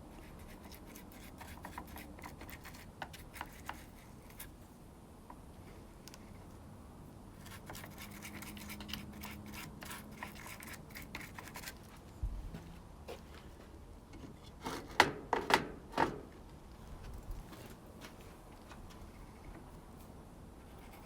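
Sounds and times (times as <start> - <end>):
scraping and rubbing strokes: 7.4 - 12.1, 19.0 - 21.0.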